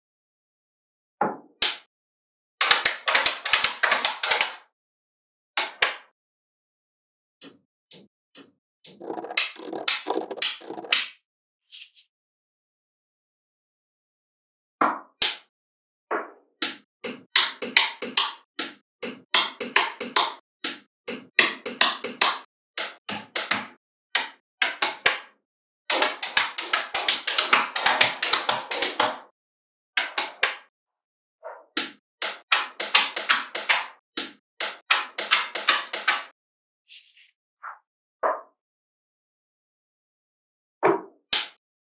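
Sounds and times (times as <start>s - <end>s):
magnetic balls clicking together: 7.4s - 11.0s.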